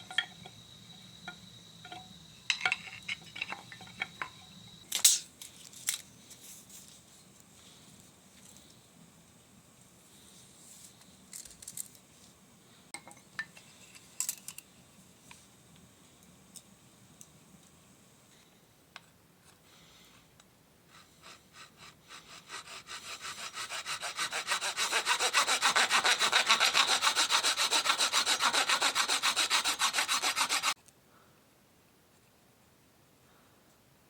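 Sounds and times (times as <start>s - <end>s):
hand saw cutting wood: 21.0s - 30.8s.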